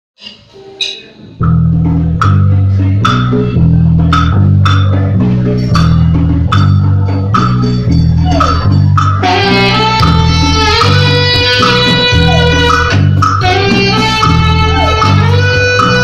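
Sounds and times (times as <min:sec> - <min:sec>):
quiet plucked notes: 0:00.2 - 0:09.3
rock band playing: 0:01.4 - 0:16.0.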